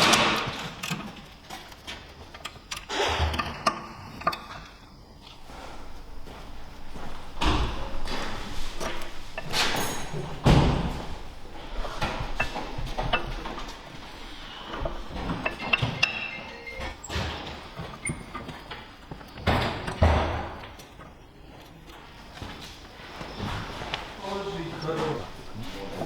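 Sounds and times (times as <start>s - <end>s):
loud thuds: 5.3s - 15.6s
irregular knocks and thumps: 5.3s - 18.4s.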